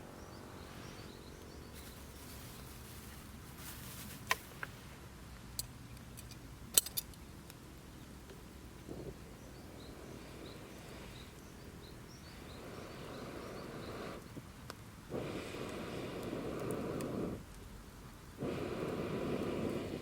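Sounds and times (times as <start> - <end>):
faint bird chirps: 0.0 - 4.0, 9.3 - 14.2.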